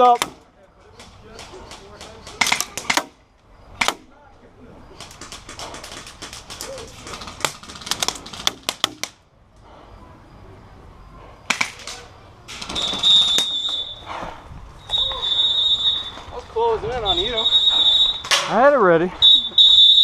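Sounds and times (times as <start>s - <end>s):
airsoft gun shots: 1.7s - 3.2s
high electronic beep: 14.8s - 16.2s, 17.0s - 18.3s.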